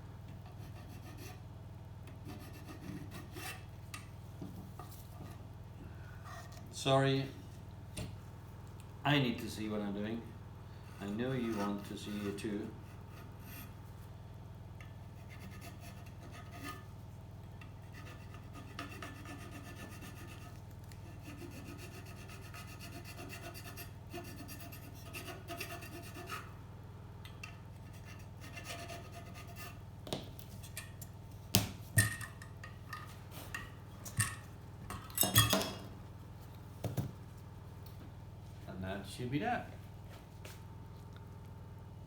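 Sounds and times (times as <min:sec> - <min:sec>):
hand file rasping on metal: 0:00.4 - 0:01.4, 0:02.2 - 0:03.7, 0:11.0 - 0:13.8, 0:15.1 - 0:16.9, 0:17.7 - 0:26.6, 0:27.8 - 0:29.8.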